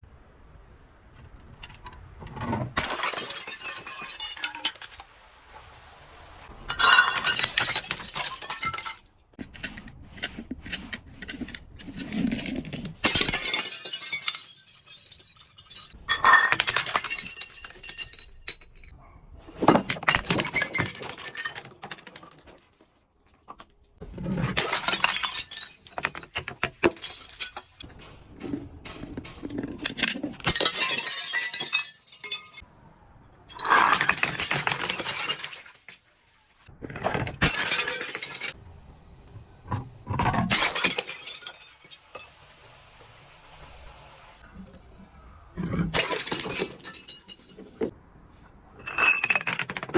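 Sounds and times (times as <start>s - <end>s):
glass bottles shattering: 2.7s - 5.1s, 6.7s - 9.4s, 11.9s - 19.0s, 19.6s - 22.8s, 24.4s - 32.7s, 33.5s - 36.1s, 37.0s - 38.6s, 40.3s - 42.4s, 45.6s - 48.0s, 48.8s - 49.9s
glass shards clinking: 2.8s - 5.0s, 6.7s - 18.9s, 19.6s - 22.6s, 24.4s - 28.0s, 29.2s - 32.6s, 33.5s - 36.0s, 37.3s - 38.6s, 40.4s - 42.3s, 45.6s - 47.9s, 48.8s - 49.9s.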